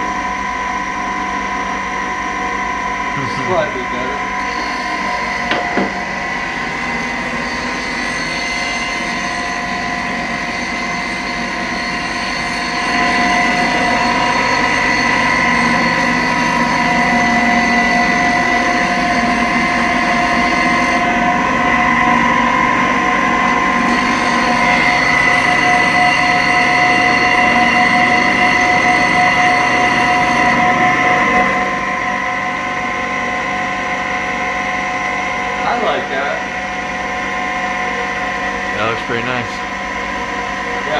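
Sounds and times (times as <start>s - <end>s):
electric motor whining: 3.2s - 31.6s.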